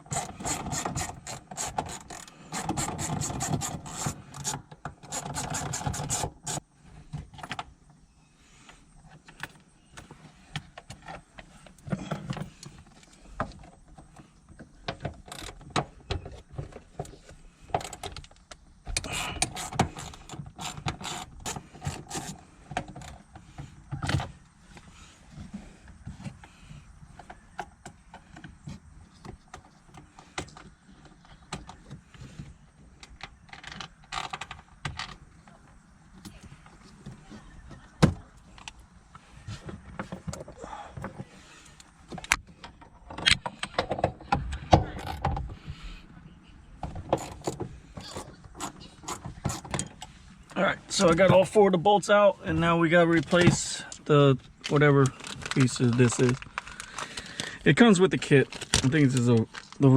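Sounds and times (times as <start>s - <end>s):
tools and parts rattling: 0.0s - 7.8s, 9.1s - 37.8s, 46.8s - 51.6s, 53.1s - 59.9s.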